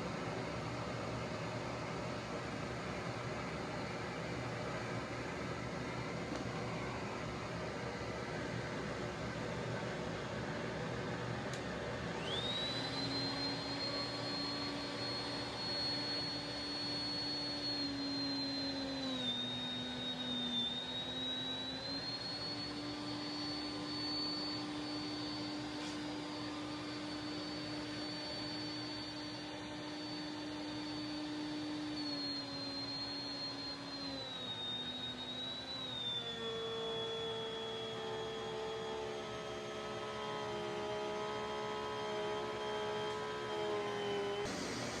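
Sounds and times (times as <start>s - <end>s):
electric router whining: 11.2s - 45.0s.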